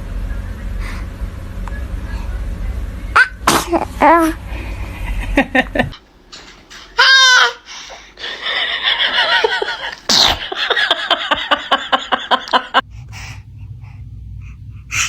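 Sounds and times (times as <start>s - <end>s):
baby sneezing: 3.2s - 4.0s, 10.1s - 10.4s.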